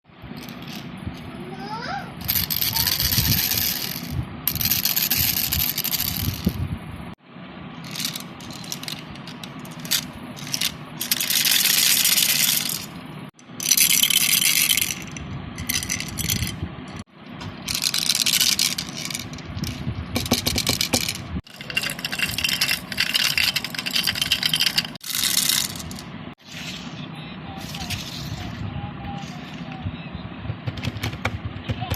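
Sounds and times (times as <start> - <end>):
baby rattle shaking: 2.2 - 6.6, 7.8 - 12.9, 13.6 - 16.6, 17.7 - 26.0.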